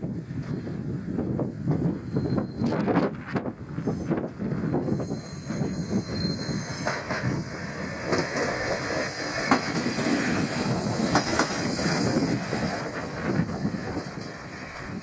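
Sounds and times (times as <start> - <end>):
train wheels rumbling on rails: 0.0 - 15.0
high wheel squeal: 2.0 - 2.9, 4.7 - 7.4
wheels knocking on rail joints: 6.8 - 14.4.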